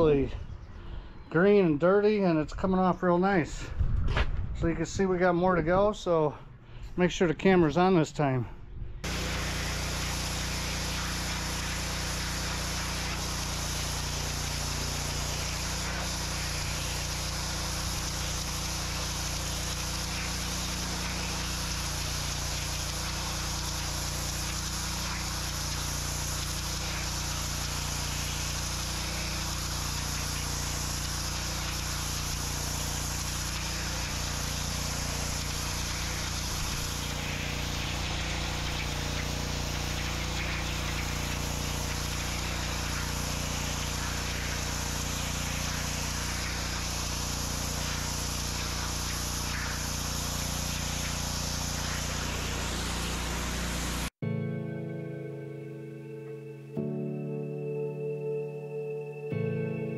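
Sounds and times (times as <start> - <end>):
pressure washer engine drone: 9.0 - 54.2
water jet hissing on brick: 9.0 - 54.2.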